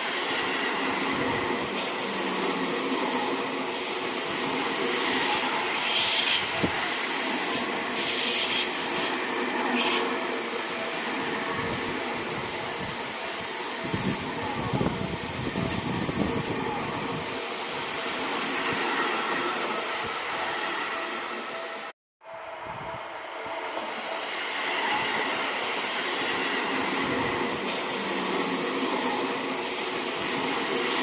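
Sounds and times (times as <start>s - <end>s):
train hissing: 0.0s - 21.9s, 23.0s - 31.0s
train wheels and motors rushing: 0.0s - 31.0s.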